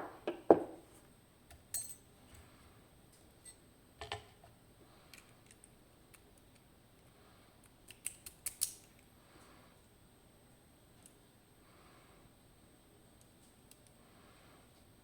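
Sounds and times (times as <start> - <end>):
small metal clicks: 7.8 - 9.0.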